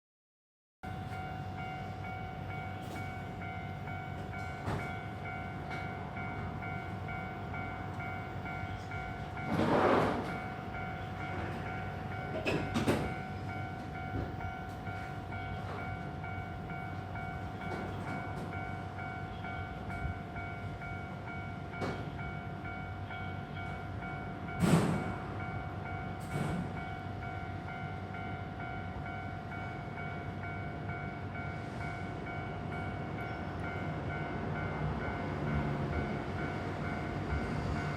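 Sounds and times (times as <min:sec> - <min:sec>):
level-crossing warning bell: 0:00.8 - 0:37.9
wheels clanking on rails: 0:00.9 - 0:20.5, 0:24.5 - 0:29.2
tram running noise: 0:00.9 - 0:37.9.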